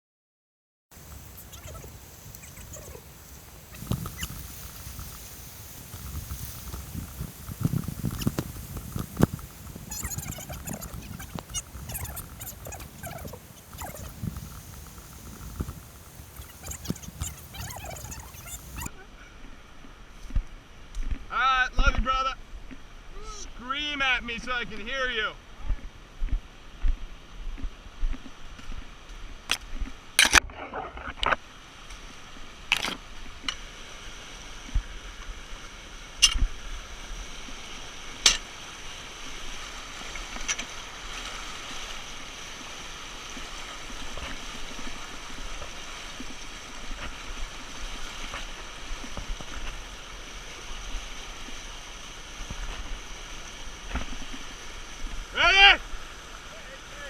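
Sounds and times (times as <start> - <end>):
river water rushing: 1.0 - 18.9, 31.6 - 57.0.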